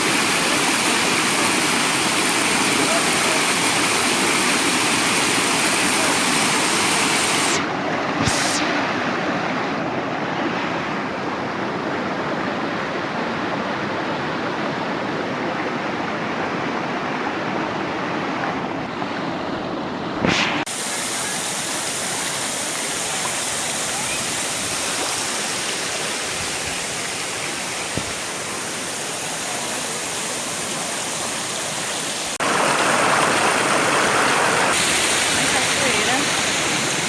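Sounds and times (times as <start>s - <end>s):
waterfall rushing: 0.0s - 10.2s, 20.2s - 37.0s
short sharp burst: 7.2s - 9.1s.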